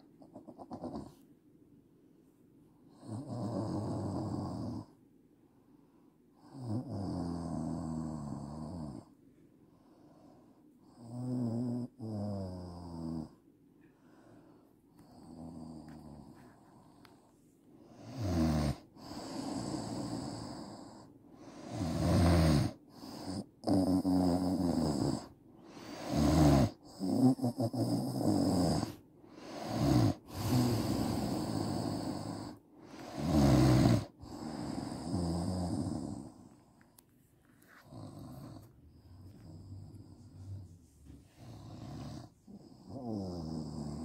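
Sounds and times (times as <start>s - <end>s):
woman snoring heavily: 3.0s - 4.9s, 6.4s - 9.1s, 10.9s - 13.3s, 17.9s - 36.5s, 37.8s - 40.8s, 41.4s - 44.0s.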